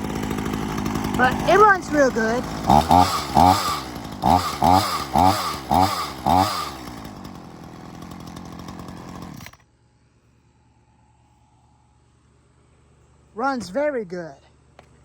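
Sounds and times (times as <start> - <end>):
chainsaw revving: 0.0 - 9.6
chainsaw idling: 0.0 - 9.7.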